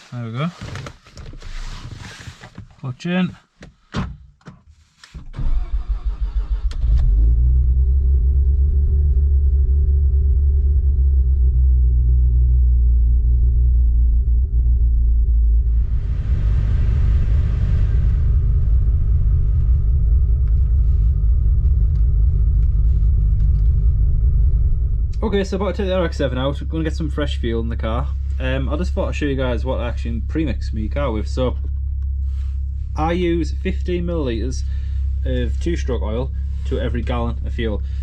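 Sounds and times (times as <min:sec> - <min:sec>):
engine cranking on starter: 0:05.2 - 0:07.6
rotary engine idling: 0:15.8 - 0:38.0.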